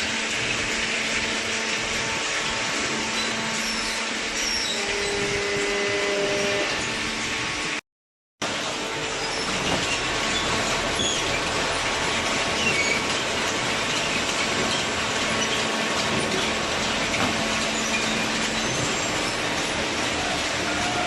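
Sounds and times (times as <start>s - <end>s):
high squeaks: 3.1s - 7.0s
baling press running: 8.4s - 21.0s.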